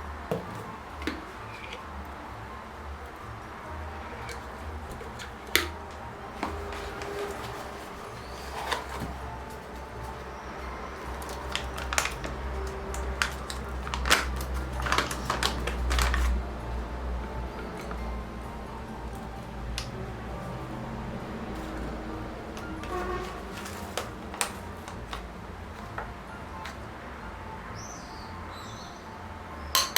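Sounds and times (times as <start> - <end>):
objects clicking and knocking: 0.3 - 2.1, 4.2 - 10.2, 11.0 - 16.4.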